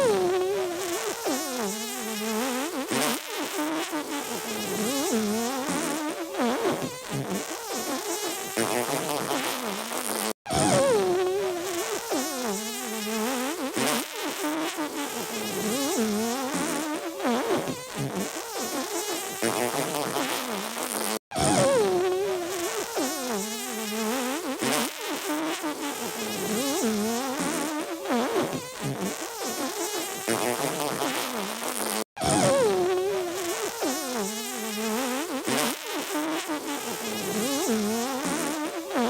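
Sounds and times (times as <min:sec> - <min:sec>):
comic fart and sneeze sound: 0:00.0 - 0:39.0.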